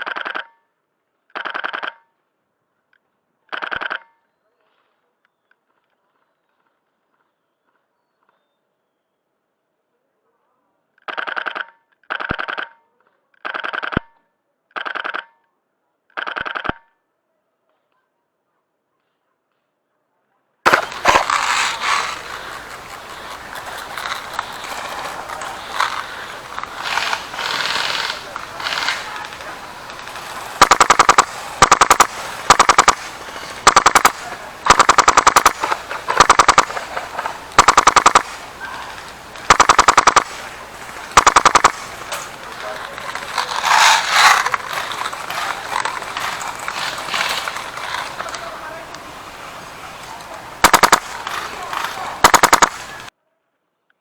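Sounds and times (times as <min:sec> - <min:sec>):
airsoft rifle full-auto bursts: 0:20.7 - 0:53.1.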